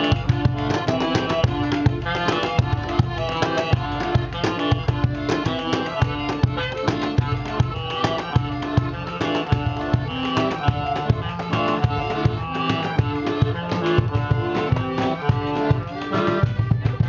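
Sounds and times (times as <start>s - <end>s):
busy drum rhythm: 0.0s - 17.0s
live band music: 0.0s - 17.0s.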